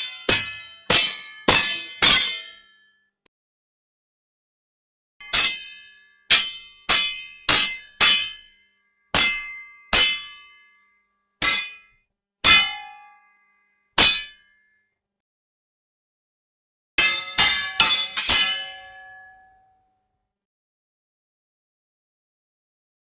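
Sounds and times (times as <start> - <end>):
sword blades clashing: 0.0 - 2.7, 5.2 - 8.5, 9.2 - 10.5, 11.4 - 13.0, 14.0 - 14.5, 17.0 - 19.4.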